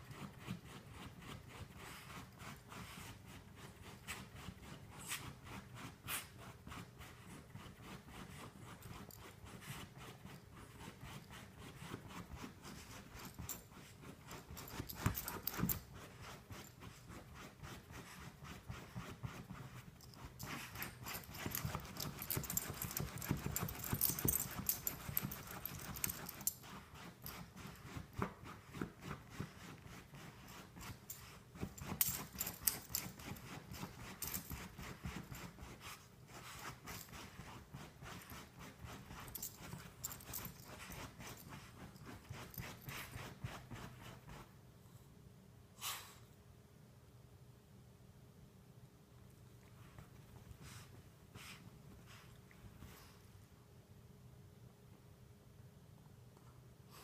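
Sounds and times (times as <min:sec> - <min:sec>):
dog scratching fabric cushion: 0:00.0 - 0:44.6.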